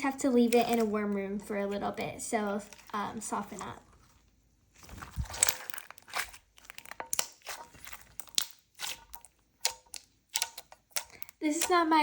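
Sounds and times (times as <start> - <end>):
slime crackling and popping: 2.6 - 12.0.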